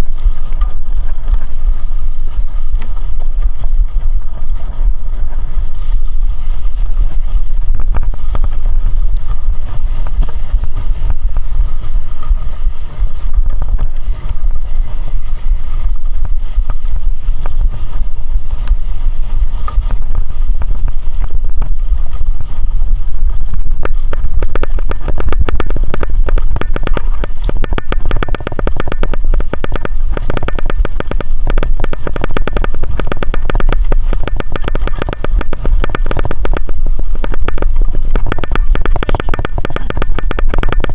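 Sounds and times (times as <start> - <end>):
heavy wind: 0.0 - 40.9
road rumble: 0.0 - 40.9
fast clicking rattle: 23.4 - 40.9.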